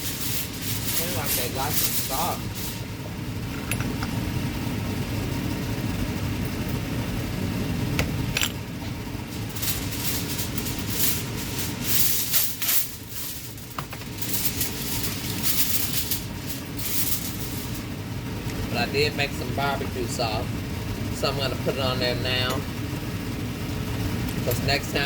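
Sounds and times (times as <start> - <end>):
hissing rustle: 0.0 - 3.0, 9.3 - 18.0
kitchen fan rumbling: 0.0 - 25.0.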